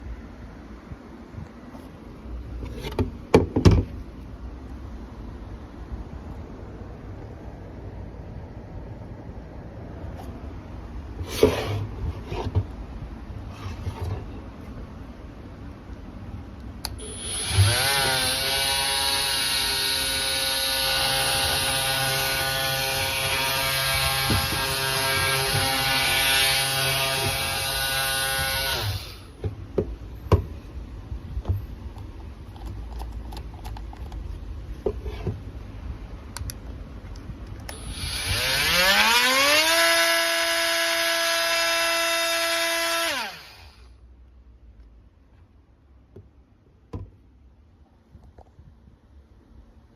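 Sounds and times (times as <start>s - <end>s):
oscillating multi-tool whining: 17.0s - 29.4s, 37.7s - 44.0s.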